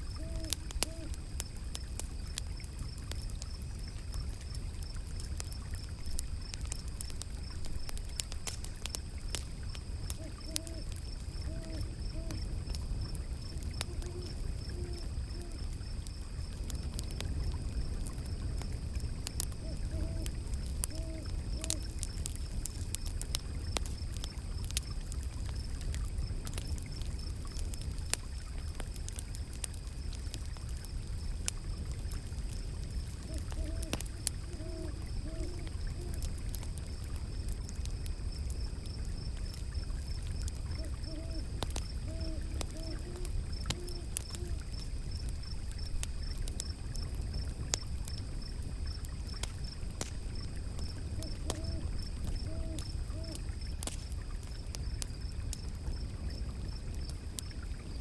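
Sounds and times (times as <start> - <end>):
wood fire crackling and popping: 0.0 - 58.0
owl hooting: 0.1 - 1.2, 10.1 - 12.5, 13.9 - 15.6, 19.6 - 21.9, 33.2 - 36.3, 40.8 - 44.6, 51.2 - 53.4.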